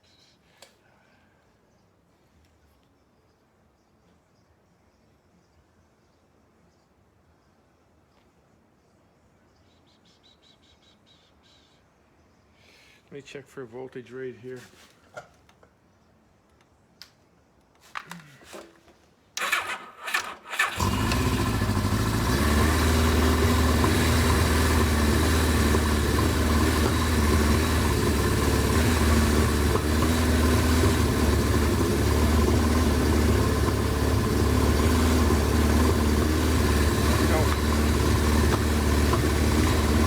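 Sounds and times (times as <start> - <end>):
starter motor cranking: 19.4 - 40.0
motorcycle engine idling: 20.6 - 40.0.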